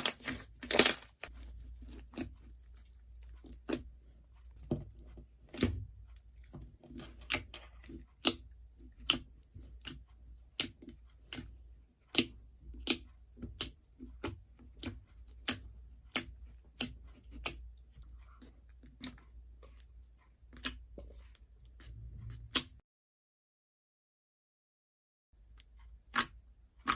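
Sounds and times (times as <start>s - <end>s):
slime clicking and popping: 26.1s - 26.9s.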